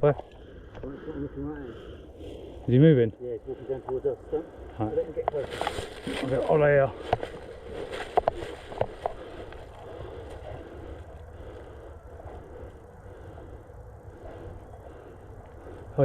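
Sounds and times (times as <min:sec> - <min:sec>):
microphone rumble and rustle: 0:03.7 - 0:16.0.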